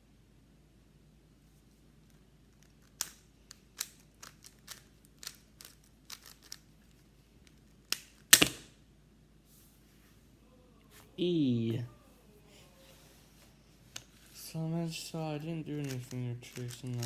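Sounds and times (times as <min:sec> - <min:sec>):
puzzle cube clicks: 0:02.5 - 0:08.7, 0:15.7 - 0:17.0.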